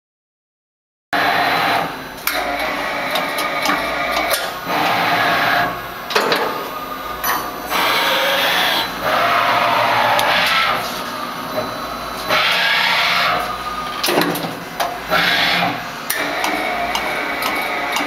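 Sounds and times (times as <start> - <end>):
drilling machine spindle noise: 1.2 - 18.0
machine sharp clicks: 16.1 - 18.0.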